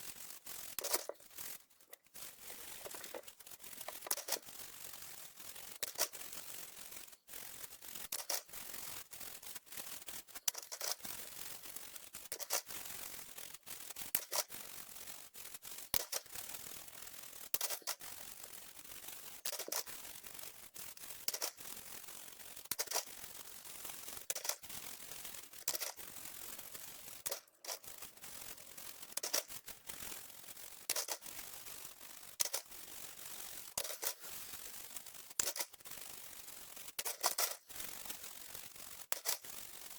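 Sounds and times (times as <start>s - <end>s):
plastic keyboard parts clicking: 0.8s - 1.2s, 2.0s - 4.5s, 5.8s - 6.2s, 8.1s - 8.4s, 10.4s - 11.2s, 12.3s - 12.7s, 14.2s - 14.5s, 17.6s - 18.1s, 19.4s - 20.0s, 21.3s - 21.7s, 22.7s - 23.2s, 24.3s - 24.7s, 25.6s - 26.0s, 27.2s - 27.9s, 29.1s - 29.6s, 30.9s - 31.3s, 32.4s - 32.8s, 33.8s - 34.4s, 35.4s - 35.8s, 37.0s - 37.6s, 39.1s - 39.5s.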